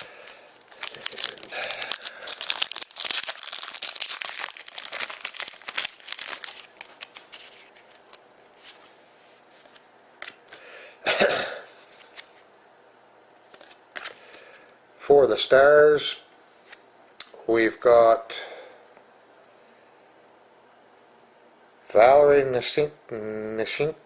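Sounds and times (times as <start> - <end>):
wrapper tearing and crinkling: 0.0 - 8.0
cards being handled: 0.0 - 10.6, 11.8 - 12.4, 13.4 - 14.4.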